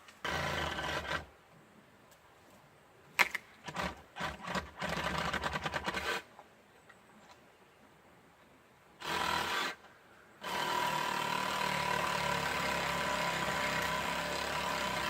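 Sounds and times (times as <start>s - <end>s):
saw cutting branches: 0.0s - 1.3s, 3.2s - 6.3s, 9.0s - 15.0s.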